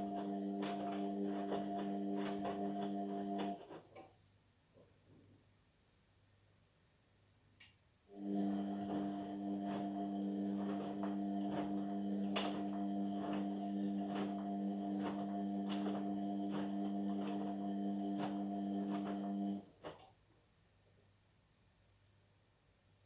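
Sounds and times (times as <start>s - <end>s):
washing machine humming: 0.0s - 4.0s, 8.1s - 19.8s.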